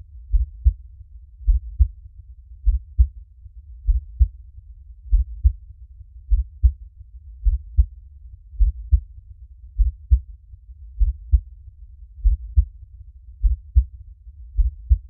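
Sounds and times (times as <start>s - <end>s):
faint low rumble: 0.0s - 15.0s
heartbeat double thumps: 0.3s - 0.8s, 1.4s - 2.0s, 2.6s - 3.2s, 3.8s - 4.4s, 5.1s - 5.6s, 6.3s - 6.8s, 7.4s - 7.9s, 8.6s - 9.1s, 9.8s - 10.3s, 11.0s - 11.5s, 12.2s - 12.7s, 13.4s - 13.9s, 14.6s - 15.0s.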